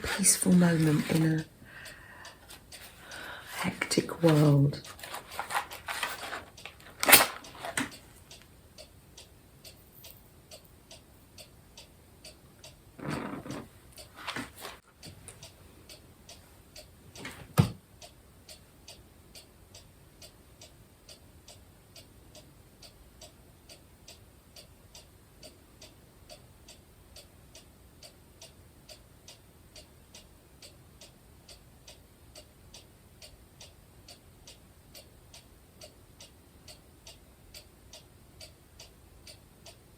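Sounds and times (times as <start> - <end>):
clock ticking: 0.0 - 39.9
rustling: 0.7 - 8.3, 13.0 - 15.5.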